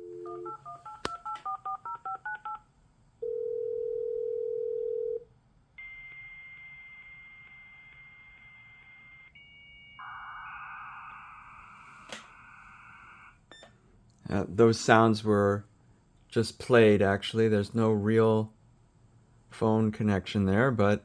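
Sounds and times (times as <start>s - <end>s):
touch-tone dialing beeps: 0.0s - 2.6s.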